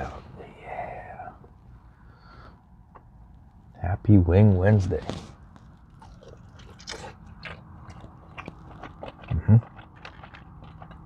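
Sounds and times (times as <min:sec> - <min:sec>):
person chewing: 0:05.1 - 0:11.0.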